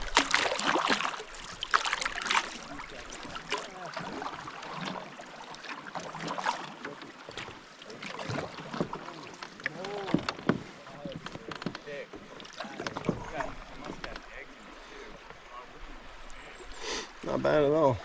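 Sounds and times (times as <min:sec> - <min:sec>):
paddle strokes: 0:00.0 - 0:17.4
water splashing around hull: 0:00.0 - 0:18.0.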